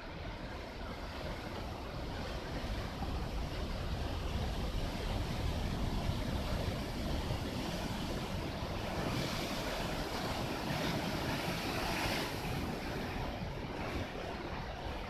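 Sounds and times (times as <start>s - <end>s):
waves washing: 0.0s - 15.0s
wind rumbling on microphone: 0.0s - 15.0s.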